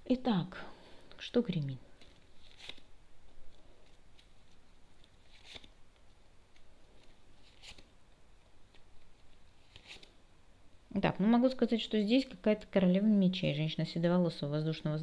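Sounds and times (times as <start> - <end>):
cards rustling and snapping: 1.9 - 10.2.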